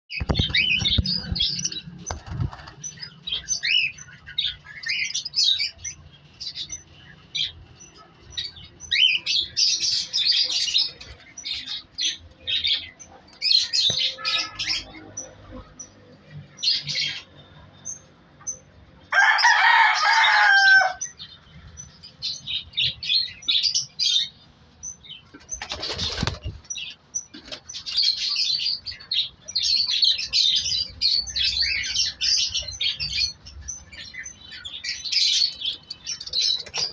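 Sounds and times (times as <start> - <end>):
wings fluttering: 0.1 - 3.1, 25.4 - 26.7.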